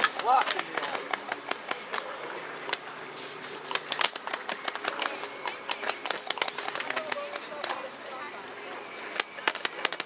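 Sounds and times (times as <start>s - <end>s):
pellets striking hulls: 0.0s - 2.1s
toy cannons firing clicks: 0.0s - 7.9s, 9.1s - 10.0s.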